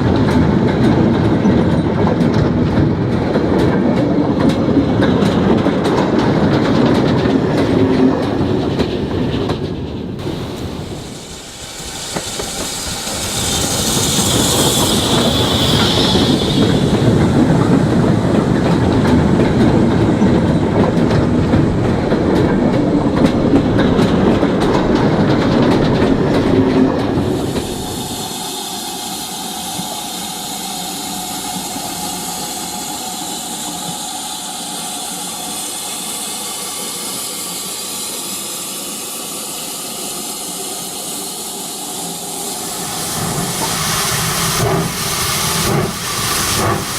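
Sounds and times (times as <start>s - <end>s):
train wheels clattering on rails: 0.0s - 46.9s
steady hiss: 10.2s - 17.7s.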